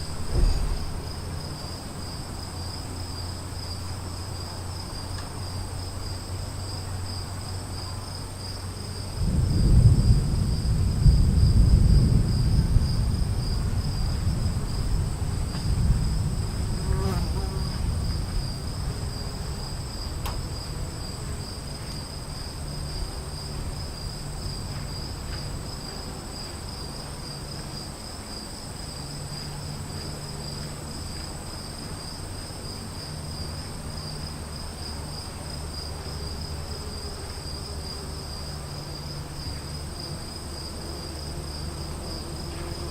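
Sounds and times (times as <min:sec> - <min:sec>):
thunder rumbling: 0:00.0 - 0:02.1, 0:09.1 - 0:21.7
insects trilling: 0:00.0 - 0:42.9.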